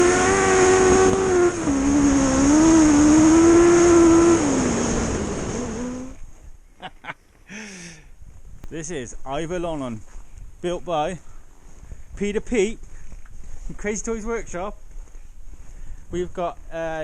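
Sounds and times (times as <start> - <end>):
dirt bike engine revving high: 0.0 - 6.2.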